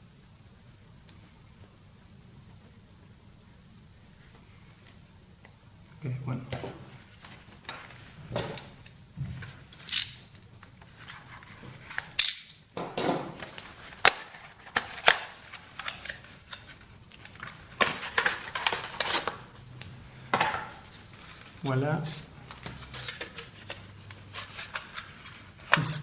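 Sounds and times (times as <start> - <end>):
hard parts clicking and snapping: 12.0 - 19.4.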